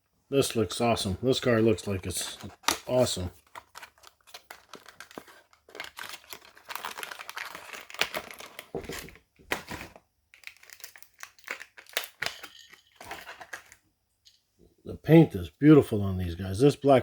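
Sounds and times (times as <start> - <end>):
plastic packaging crinkling: 1.8 - 13.8.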